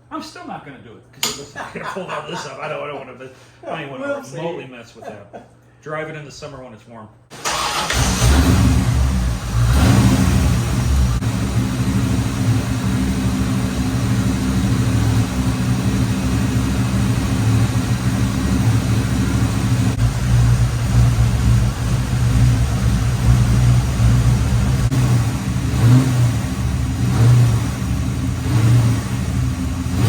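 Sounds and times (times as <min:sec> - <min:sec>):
car engine idling with misfire: 0:07.4 - 0:30.0.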